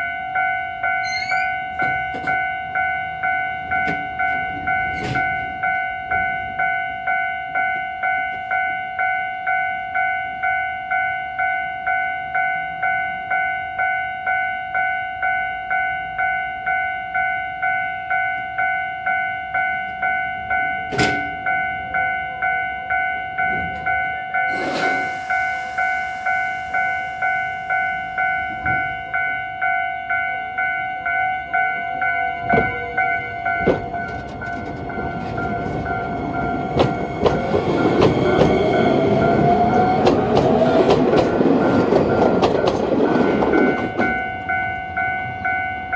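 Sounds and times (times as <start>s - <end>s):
level crossing alarm ringing: 0.0s - 45.9s
burst of hiss: 24.5s - 28.0s.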